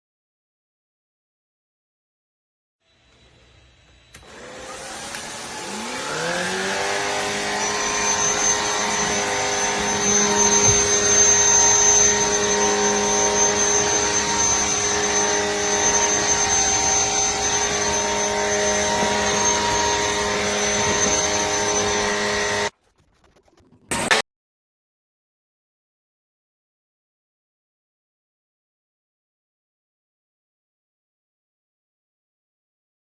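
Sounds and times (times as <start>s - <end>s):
vacuum motor whining: 2.9s - 22.7s.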